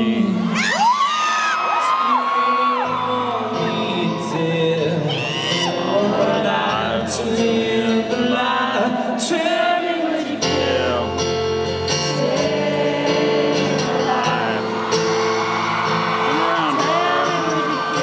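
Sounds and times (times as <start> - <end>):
people singing: 0.0 - 0.8, 2.6 - 18.0
live rock band: 10.3 - 18.0.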